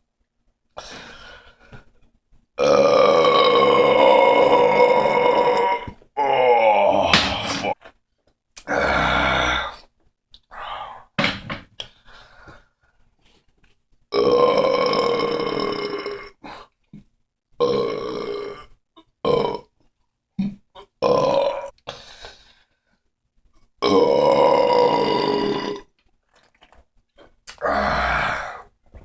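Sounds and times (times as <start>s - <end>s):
man belching: 2.6s - 7.8s, 14.2s - 16.2s, 19.3s - 19.7s, 21.0s - 21.7s, 23.8s - 25.8s.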